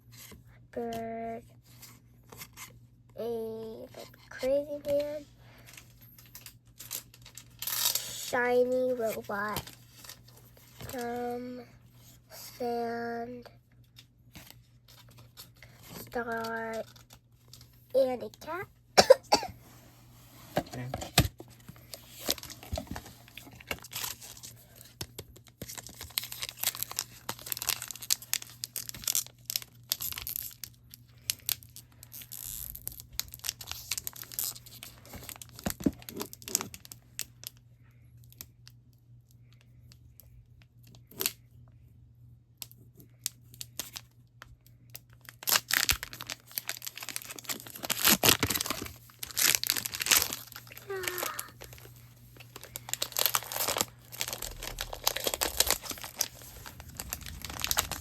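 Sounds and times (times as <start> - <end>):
foil wrapper tearing and crinkling: 6.3 - 8.4, 21.8 - 37.6, 43.5 - 44.1, 45.0 - 58.0.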